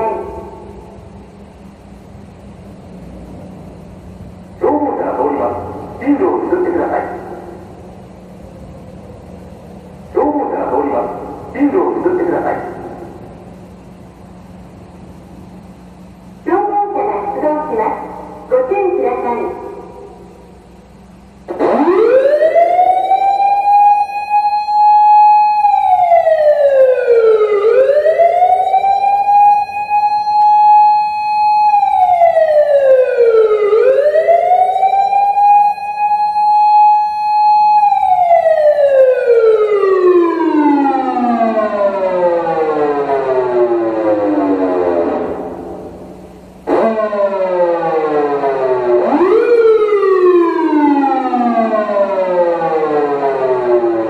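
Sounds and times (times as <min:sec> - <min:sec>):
electronic siren wailing: 0:00.0 - 0:01.3, 0:21.4 - 0:54.0.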